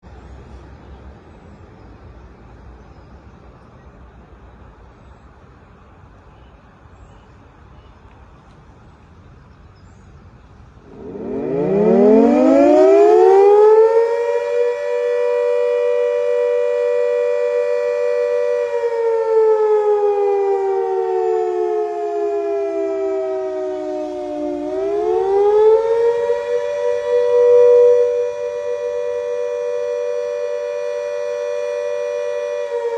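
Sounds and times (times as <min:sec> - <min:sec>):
faint background noise: 0:00.0 - 0:32.9
siren wailing: 0:10.8 - 0:32.9.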